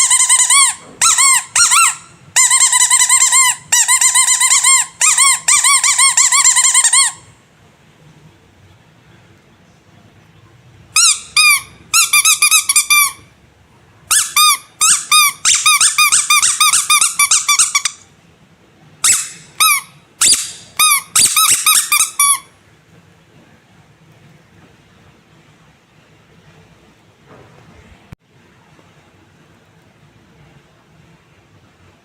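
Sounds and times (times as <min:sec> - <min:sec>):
squeaky rubber toy squeaks: 0:00.0 - 0:07.3, 0:11.0 - 0:13.3, 0:14.1 - 0:18.1, 0:19.0 - 0:22.6.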